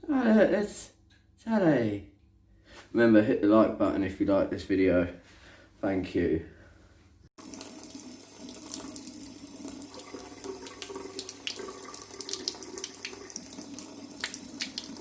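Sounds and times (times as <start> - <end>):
tap water running into sink: 7.4 - 15.0.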